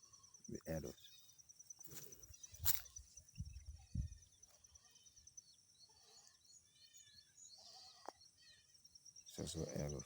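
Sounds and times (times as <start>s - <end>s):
insect trill: 0.0s - 10.0s.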